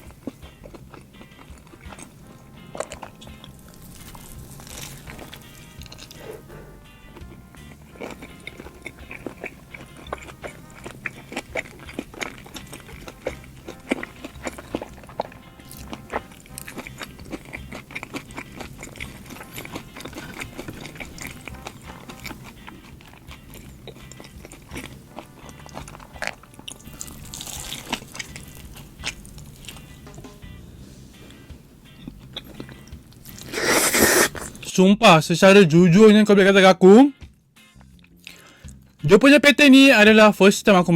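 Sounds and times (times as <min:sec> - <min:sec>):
chewing and biting food: 0:00.0 - 0:30.3, 0:31.2 - 0:34.7, 0:37.7 - 0:39.0
wet mouth clicks: 0:04.9 - 0:07.4, 0:32.0 - 0:34.6.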